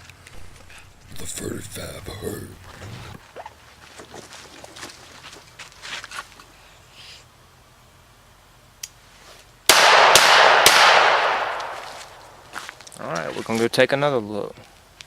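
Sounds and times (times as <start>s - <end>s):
pistol shots with echo: 9.7s - 12.3s.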